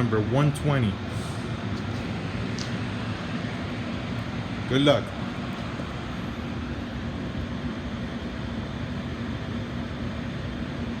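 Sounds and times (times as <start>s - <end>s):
machinery or ventilation hum: 0.0s - 11.0s.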